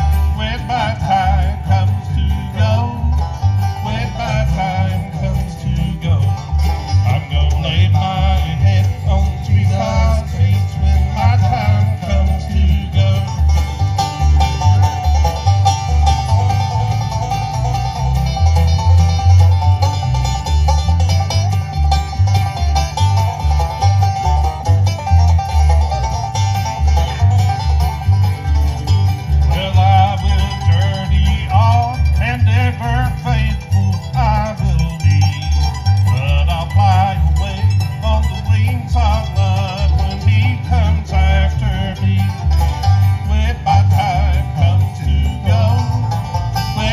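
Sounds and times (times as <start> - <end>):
bluegrass band playing: 0.0 - 46.9.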